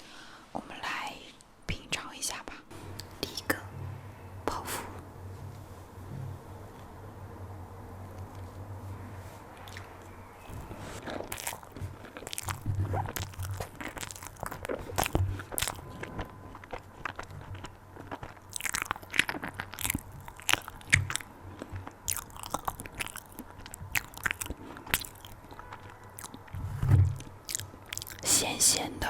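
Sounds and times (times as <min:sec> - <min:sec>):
chewing crunchy pastry: 0:09.5 - 0:28.9.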